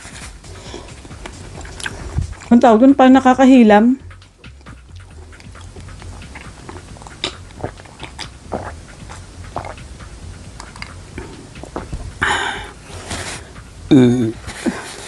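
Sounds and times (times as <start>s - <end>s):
steady low hum: 0.0s - 15.0s
chewing and mouth sounds: 0.2s - 2.6s, 4.1s - 12.8s.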